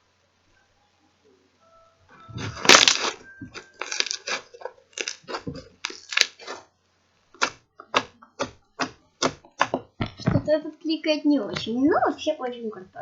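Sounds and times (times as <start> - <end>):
slime squelching: 2.3 - 6.7.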